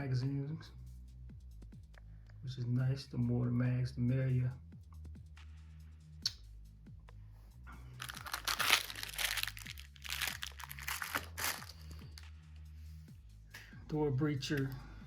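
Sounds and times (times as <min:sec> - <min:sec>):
packaging crumpled and torn: 0:08.0 - 0:12.2.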